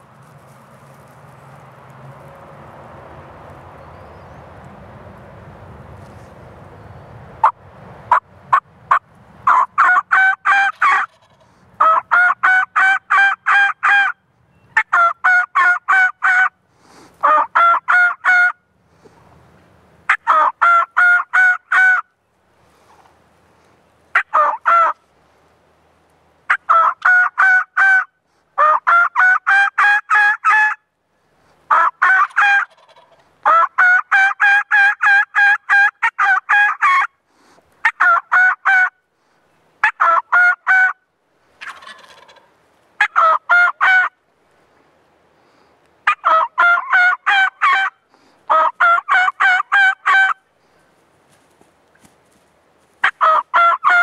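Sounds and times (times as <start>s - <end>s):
turkeys gobbling: 7.4s - 14.2s, 14.8s - 16.5s, 17.2s - 18.6s, 20.1s - 22.0s, 24.1s - 25.0s, 26.5s - 30.8s, 31.7s - 37.1s, 37.8s - 38.9s, 39.8s - 41.0s, 41.6s - 44.2s, 46.0s - 50.4s, 53.0s - 54.0s.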